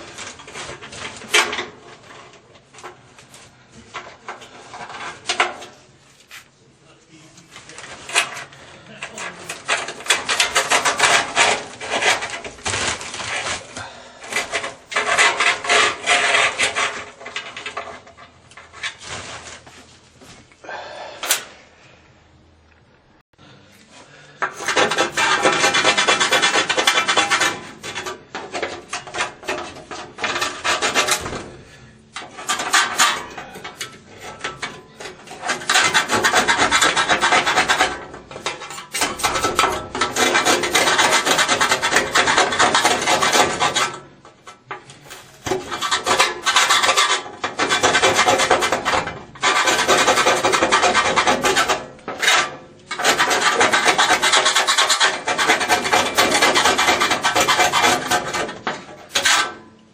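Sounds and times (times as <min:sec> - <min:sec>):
hand tool rasping on metal: 0:08.1 - 0:12.5, 0:14.2 - 0:18.7, 0:24.4 - 0:44.1, 0:45.5 - 0:59.5.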